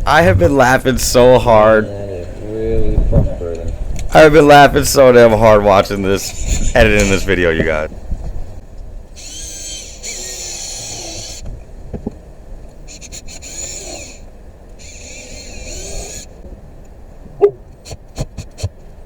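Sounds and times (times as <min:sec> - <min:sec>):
power drill whining: 0:09.1 - 0:11.5, 0:12.9 - 0:16.4.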